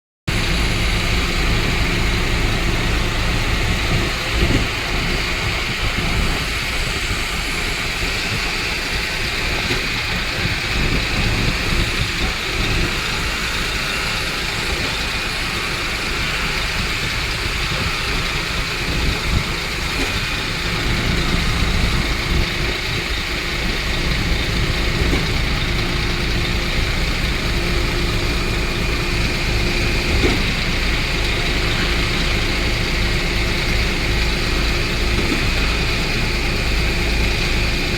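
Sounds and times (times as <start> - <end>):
truck engine running: 0.3 - 37.9.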